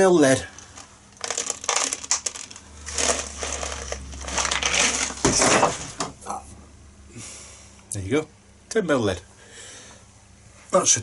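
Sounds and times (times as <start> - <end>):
objects clattering and crinkling: 0.4 - 6.2.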